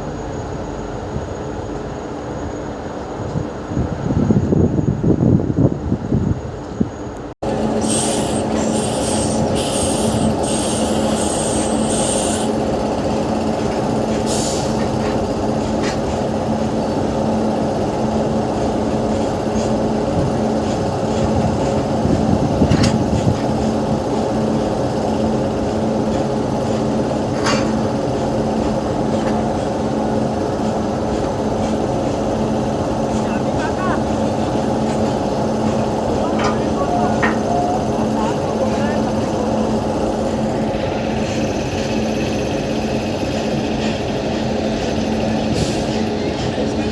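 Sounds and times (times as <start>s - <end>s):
electric locomotive humming: 0.0s - 46.9s
high hissing bursts: 7.8s - 12.5s.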